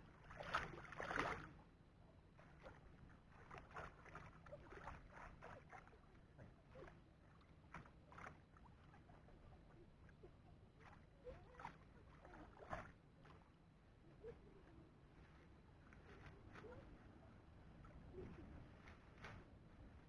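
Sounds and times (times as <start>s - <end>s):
water splashing and sloshing: 0.2s - 1.7s, 2.4s - 14.5s.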